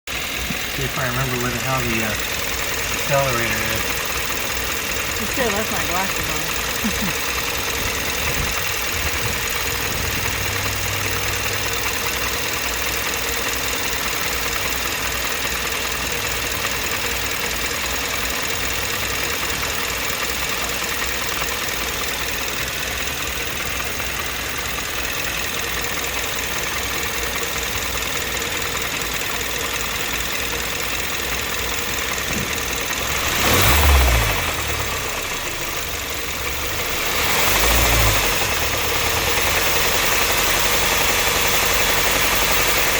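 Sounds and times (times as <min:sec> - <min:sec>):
car engine idling: 0:00.0 - 0:42.9
engine revving: 0:00.1 - 0:42.9.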